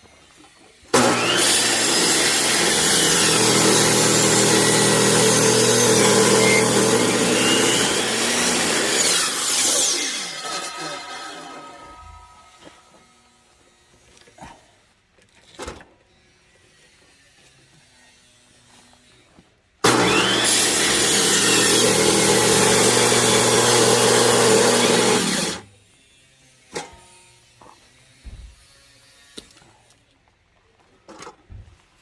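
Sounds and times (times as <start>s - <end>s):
chainsaw cutting through log: 0.9s - 13.1s, 19.8s - 25.8s.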